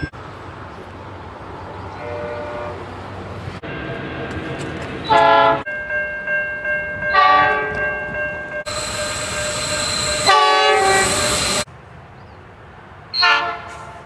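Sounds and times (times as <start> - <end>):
train horn blasts: 2.0 - 2.9, 5.1 - 5.7, 7.0 - 11.7, 13.2 - 14.0.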